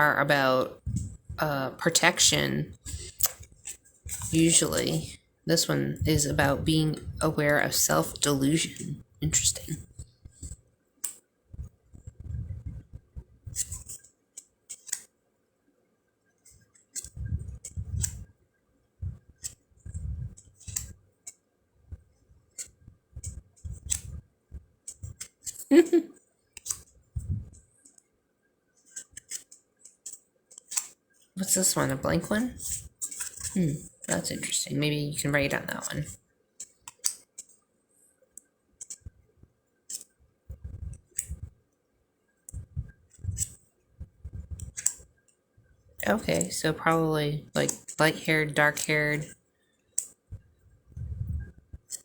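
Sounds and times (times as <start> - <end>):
cards being flipped by hand: 13.5 - 15.1, 16.5 - 18.3, 22.6 - 24.2, 26.6 - 26.9, 28.8 - 31.0, 32.6 - 33.6, 39.9 - 40.1
cards clicking and tapping: 13.6 - 15.1, 26.6 - 26.9, 28.8 - 31.0, 36.6 - 37.6, 39.9 - 40.1.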